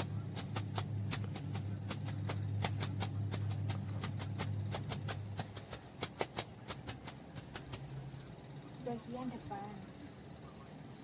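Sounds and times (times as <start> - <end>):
cupped hands patting a back: 0.0 - 8.0
steady low hum: 0.0 - 11.0.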